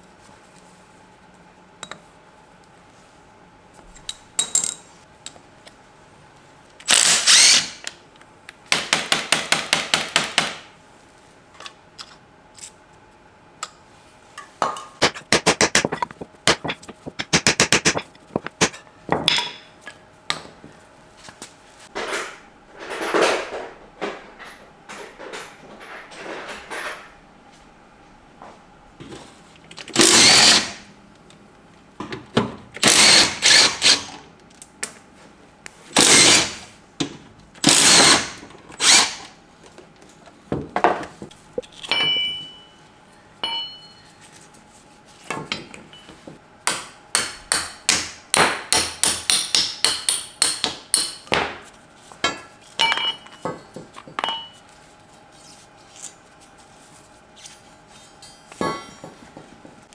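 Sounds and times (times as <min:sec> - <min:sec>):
impact wrench spinning up: 0:06.9 - 0:07.8, 0:15.0 - 0:18.8, 0:30.0 - 0:30.7, 0:32.8 - 0:34.1, 0:36.0 - 0:36.6, 0:37.6 - 0:39.2
impact wrench hammering: 0:15.0 - 0:19.6, 0:46.7 - 0:51.4.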